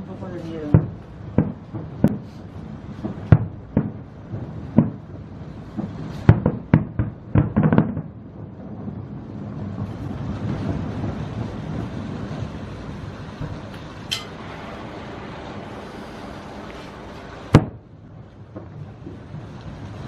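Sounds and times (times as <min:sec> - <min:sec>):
dense fireworks rumble: 0:00.0 - 0:20.0
fireworks bangs: 0:00.0 - 0:20.0.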